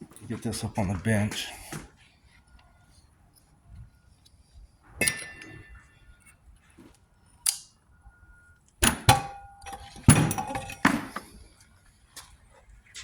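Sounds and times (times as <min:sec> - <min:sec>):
metal tools clanking on a workbench: 0:05.0 - 0:05.9, 0:08.8 - 0:11.5.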